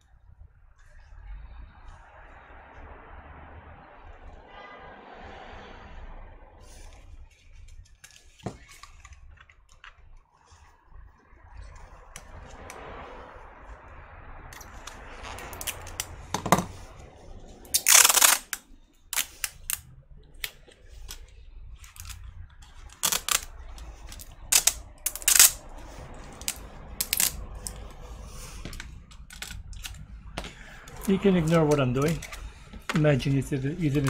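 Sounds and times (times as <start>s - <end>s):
loud scrape or rip: 14.6s - 19.8s, 22.8s - 29.0s.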